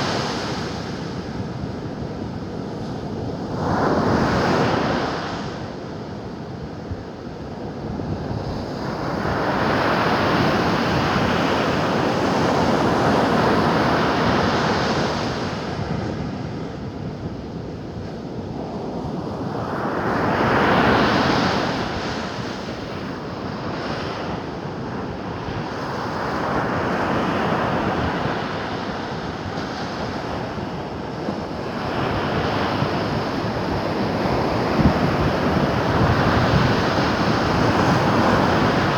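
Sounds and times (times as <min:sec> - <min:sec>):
waves breaking and washing ashore: 0:00.0 - 0:38.9
wind buffeting microphone: 0:27.7 - 0:38.9.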